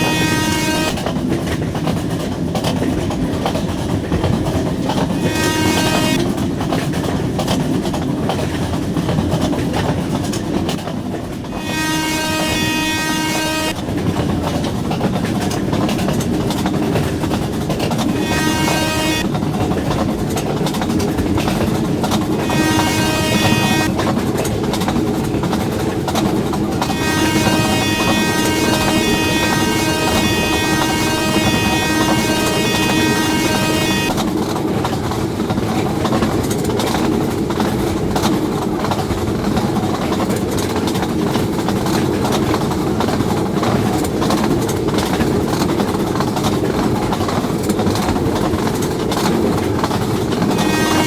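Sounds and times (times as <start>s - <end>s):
train horn blasts: 0.0s - 1.2s, 5.1s - 6.5s, 11.5s - 14.2s, 18.0s - 19.6s, 22.3s - 24.2s, 26.8s - 34.4s, 50.5s - 51.0s
train wheels rumbling on rail: 0.0s - 51.0s.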